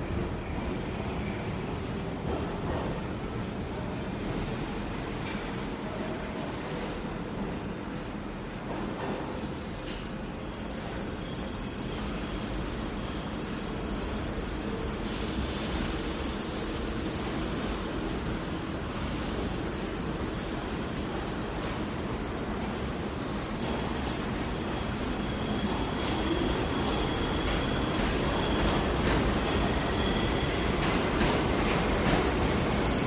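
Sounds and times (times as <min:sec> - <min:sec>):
subway train rumbling: 0:00.0 - 0:33.0
steel wheel squeal: 0:10.4 - 0:15.1, 0:16.0 - 0:17.2, 0:31.8 - 0:33.0.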